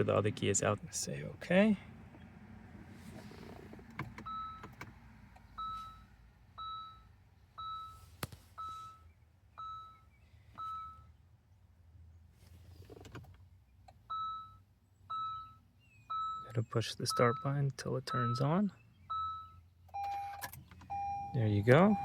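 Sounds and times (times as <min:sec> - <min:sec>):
electronic beeps: 0:19.1 - 0:22.0.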